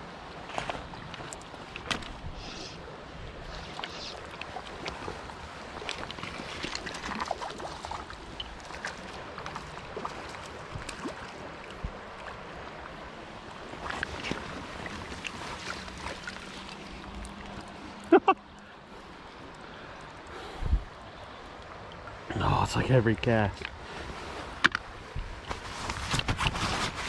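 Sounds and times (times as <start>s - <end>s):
stream water running: 0.0s - 27.0s
small splashes and clicks: 3.5s - 12.4s, 13.8s - 18.7s, 23.5s - 23.8s
wind on microphone: 20.5s - 20.9s.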